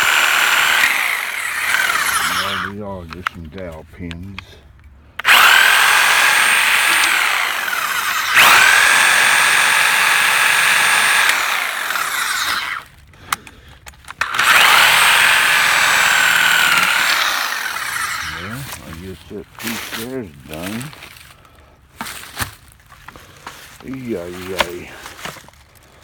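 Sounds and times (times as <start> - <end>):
reciprocating saw cutting wood: 0.0 - 2.8, 5.2 - 12.9, 14.2 - 21.0
saw clicks: 0.0 - 3.4, 5.2 - 19.0.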